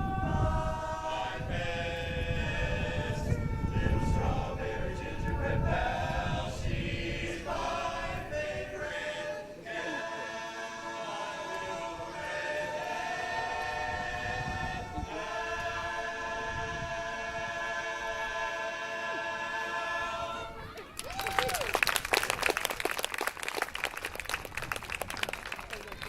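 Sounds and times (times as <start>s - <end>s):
a cappella chorus singing: 0.0s - 20.6s.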